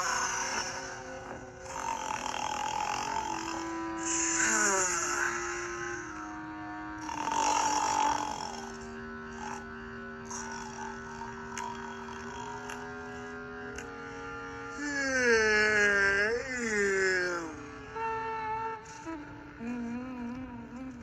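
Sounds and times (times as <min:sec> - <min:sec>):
loud rasping snore: 0:00.0 - 0:06.2, 0:07.0 - 0:12.9
person moaning: 0:00.0 - 0:06.4, 0:14.8 - 0:21.0
soft background music: 0:00.0 - 0:21.0.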